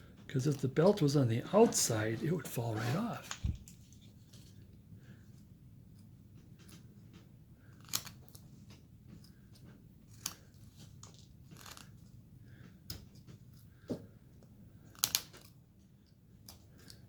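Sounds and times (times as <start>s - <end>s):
blade scraping wood: 0.9s - 3.4s
wood snapping: 14.9s - 15.5s.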